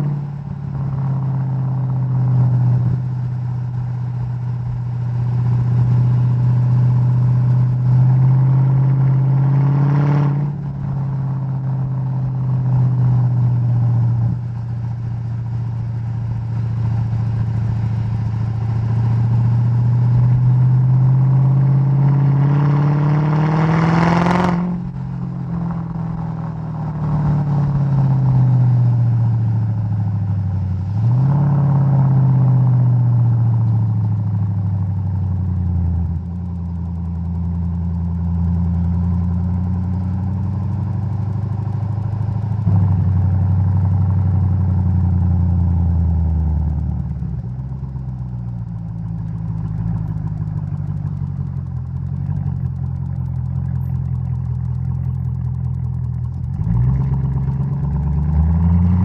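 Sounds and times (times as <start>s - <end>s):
car exhaust revving: 0.0s - 59.0s.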